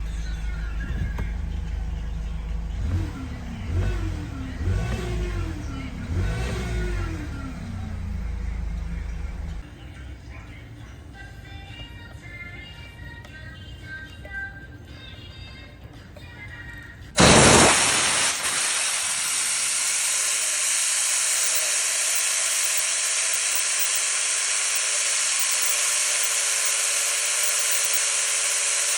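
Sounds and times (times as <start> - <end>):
van engine revving: 0.0 - 9.6, 17.2 - 28.9.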